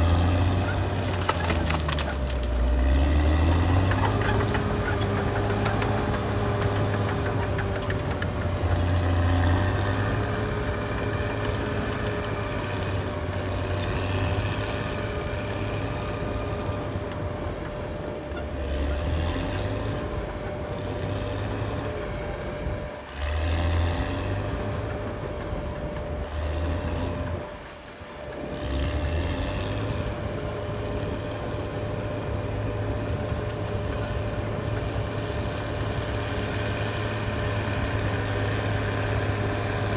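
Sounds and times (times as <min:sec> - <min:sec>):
bulldozer diesel engine: 0:00.0 - 0:39.9.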